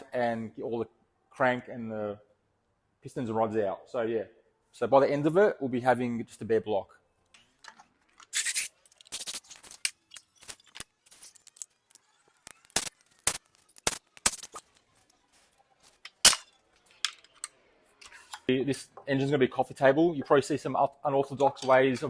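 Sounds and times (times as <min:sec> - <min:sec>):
metallic tool clicks and knocks: 0:16.0 - 0:18.5.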